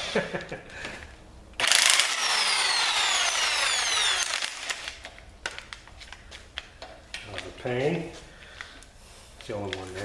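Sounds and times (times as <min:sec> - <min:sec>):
power tool grinding with whine: 0:01.6 - 0:04.9.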